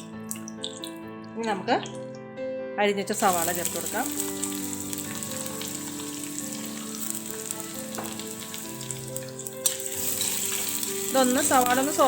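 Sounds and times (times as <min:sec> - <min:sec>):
faint background music: 0:00.0 - 0:12.0
onion sizzling in oil: 0:03.1 - 0:12.0.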